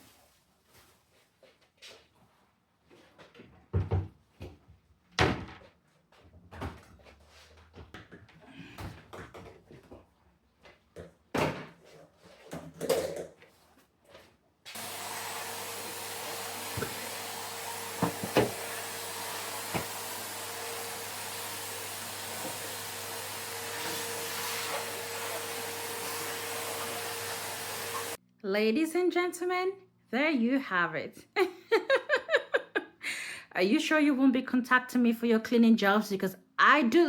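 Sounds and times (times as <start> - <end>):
cleaning appliance whirring hum: 14.7 - 28.2.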